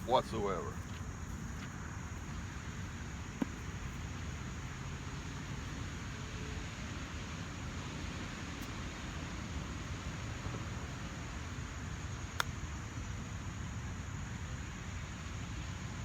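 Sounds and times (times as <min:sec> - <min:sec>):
wind: 0:00.0 - 0:16.0.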